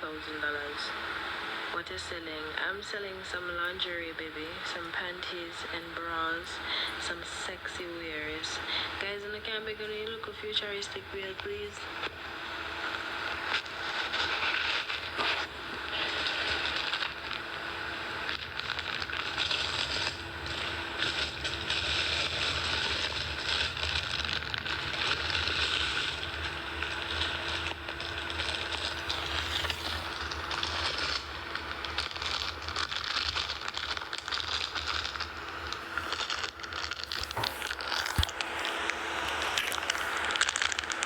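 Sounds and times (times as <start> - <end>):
steady low hum: 0.0 - 41.0
plastic rustling and crackling: 13.4 - 17.6, 18.2 - 41.0.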